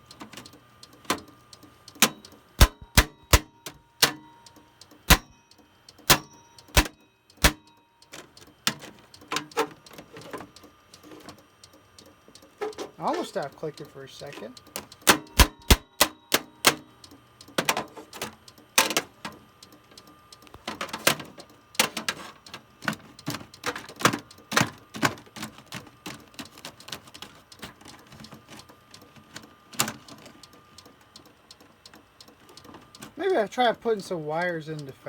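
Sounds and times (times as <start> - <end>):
hammer striking metal computer case: 2.0 - 4.3, 5.1 - 5.4, 6.1 - 9.8, 15.1 - 16.9.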